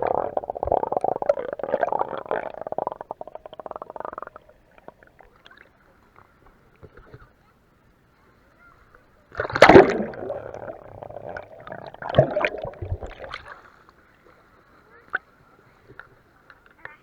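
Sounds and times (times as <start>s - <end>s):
water sloshing: 9.4s - 13.7s.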